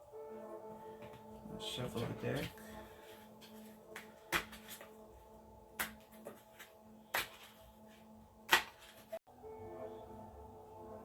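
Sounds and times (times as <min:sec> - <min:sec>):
soft background music: 0:00.0 - 0:11.0
slaps of cards: 0:05.8 - 0:06.2, 0:07.1 - 0:07.5, 0:08.5 - 0:09.0.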